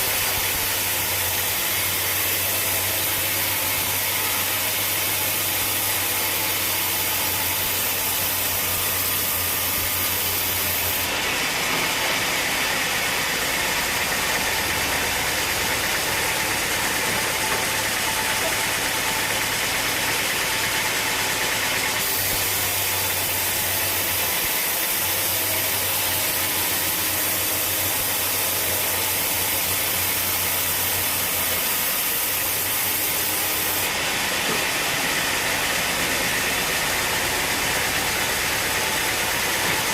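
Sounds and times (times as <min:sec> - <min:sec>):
sawmill machinery running: 0:00.0 - 0:39.9.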